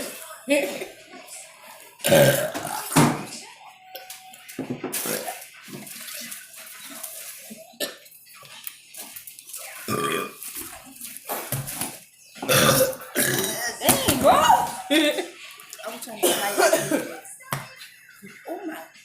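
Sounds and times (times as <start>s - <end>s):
person burping: 2.0s - 3.0s, 9.9s - 10.4s, 12.4s - 14.8s, 16.2s - 17.2s.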